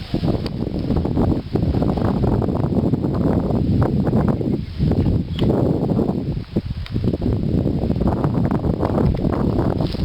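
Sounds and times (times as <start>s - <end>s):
wind buffeting microphone: 0.0s - 10.0s
brush rustling: 8.8s - 10.0s.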